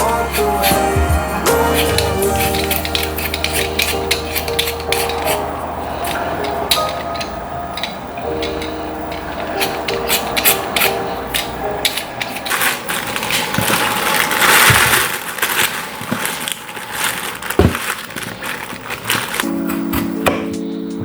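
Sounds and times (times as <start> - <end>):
soft background music: 0.0 - 14.5, 19.4 - 21.0
crinkling and rustling: 1.6 - 21.0.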